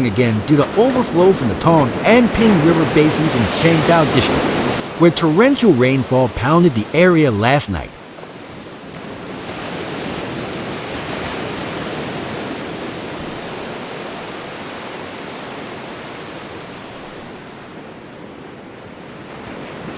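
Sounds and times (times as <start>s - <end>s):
floodwater rushing: 0.0s - 7.7s.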